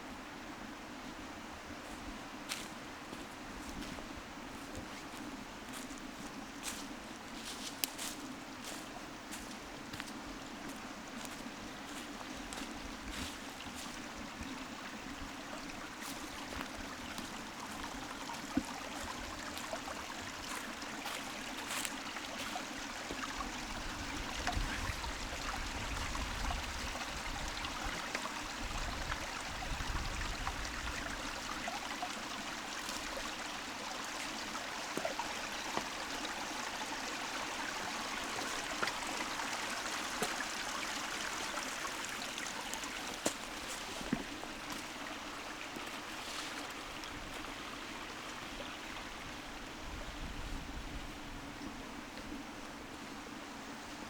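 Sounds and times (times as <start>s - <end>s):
stream flowing: 0.0s - 54.0s
wind buffeting microphone: 23.4s - 31.3s, 49.3s - 51.6s.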